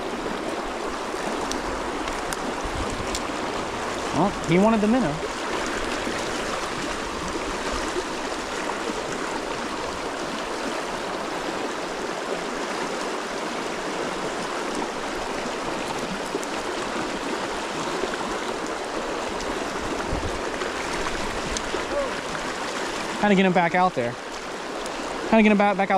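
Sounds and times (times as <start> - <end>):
stream rushing: 0.0 - 25.9.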